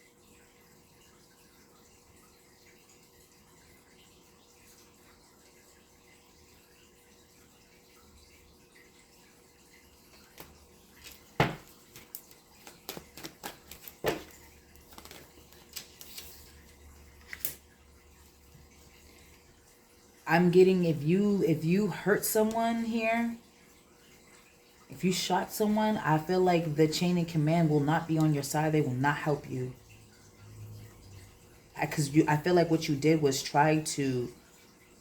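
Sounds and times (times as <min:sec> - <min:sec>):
cards tapping and clicking: 0:10.1 - 0:16.4.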